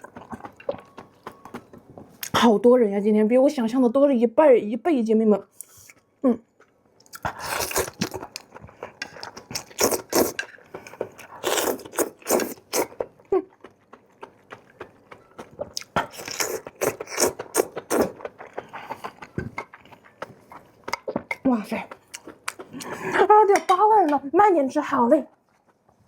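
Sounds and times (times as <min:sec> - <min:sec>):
person crunching and chewing food: 0:00.0 - 0:02.3, 0:05.6 - 0:23.2.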